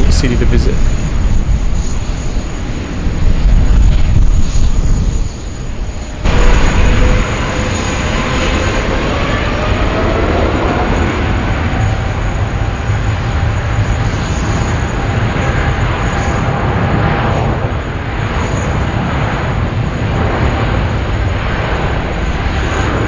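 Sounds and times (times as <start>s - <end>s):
jet engines rumbling: 0.0s - 23.0s
jet engines whining: 0.0s - 23.0s.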